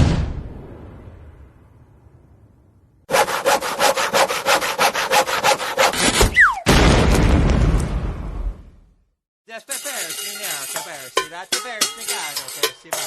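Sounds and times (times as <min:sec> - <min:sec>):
saw cutting wood: 0:03.1 - 0:06.3
short falling whistle: 0:06.3 - 0:06.7.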